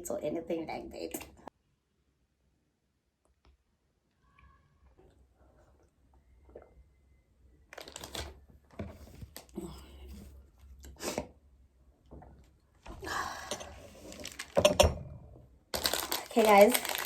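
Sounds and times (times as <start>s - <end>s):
rustling and handling noises: 7.7s - 10.8s, 13.5s - 14.8s, 15.8s - 17.0s.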